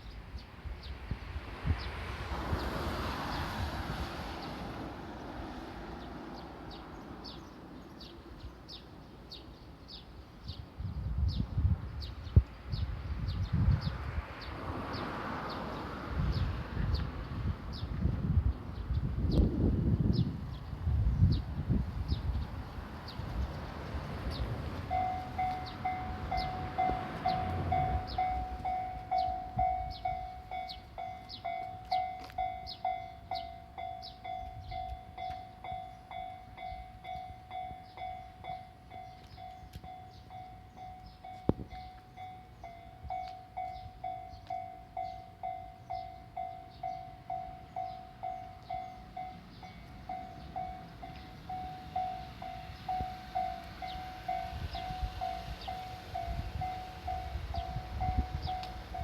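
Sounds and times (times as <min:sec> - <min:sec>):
level-crossing warning bell clanging: 0:24.3 - 0:59.0.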